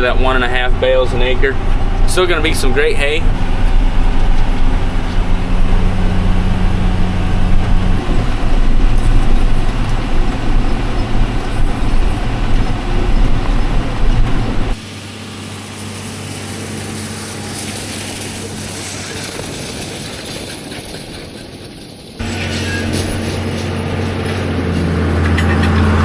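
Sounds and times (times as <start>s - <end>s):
tractor engine running: 0.0s - 26.0s.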